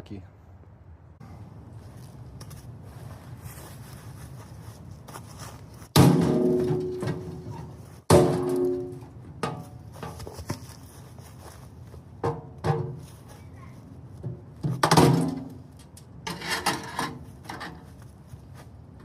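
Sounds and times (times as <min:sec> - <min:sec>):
metal strikes on steel safe: 0:06.0 - 0:09.6.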